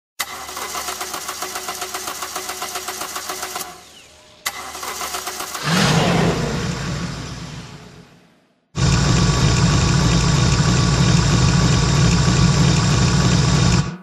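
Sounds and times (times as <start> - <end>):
engine starter cranking: 0.2 - 6.0
engine rumbling: 3.6 - 14.0.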